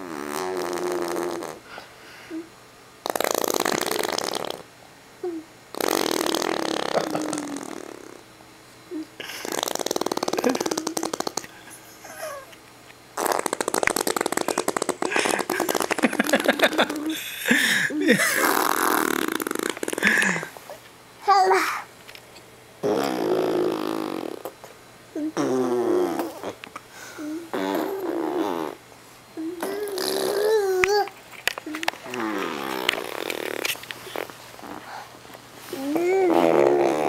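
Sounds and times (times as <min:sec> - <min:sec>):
hand fart noises: 0:00.0 - 0:01.6, 0:03.0 - 0:04.7, 0:05.7 - 0:08.2, 0:09.2 - 0:12.5, 0:13.2 - 0:17.2, 0:18.1 - 0:20.5, 0:22.8 - 0:26.7, 0:27.5 - 0:28.8, 0:29.6 - 0:34.9, 0:36.0 - 0:37.0.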